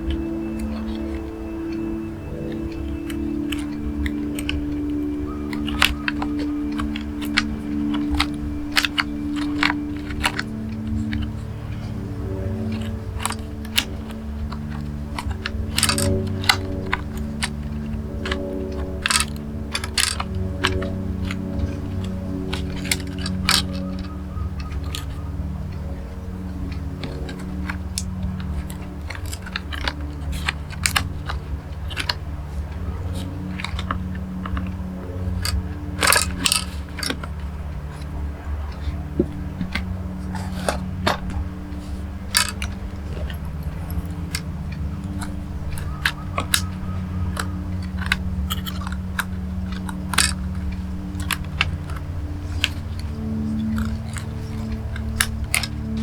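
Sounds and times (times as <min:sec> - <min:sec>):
low background music: 0:00.0 - 0:56.0
small tools clicking on laptop parts: 0:00.0 - 0:56.0.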